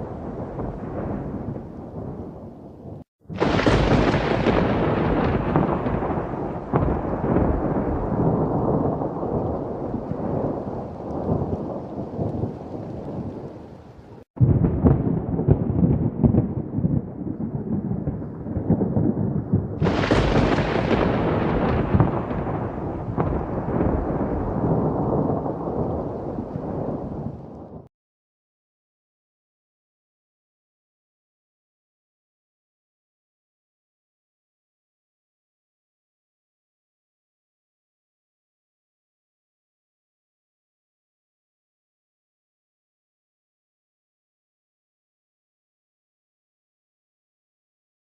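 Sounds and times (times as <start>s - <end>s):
rain: 0.0s - 27.9s
thunder clap rumbling: 0.0s - 27.9s.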